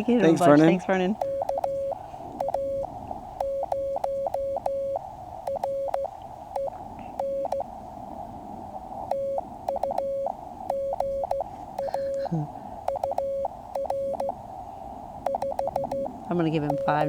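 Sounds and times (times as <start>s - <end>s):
receiver hiss: 0.0s - 17.0s
morse code tone: 0.5s - 7.7s, 9.1s - 12.1s, 12.9s - 14.4s, 15.2s - 17.0s.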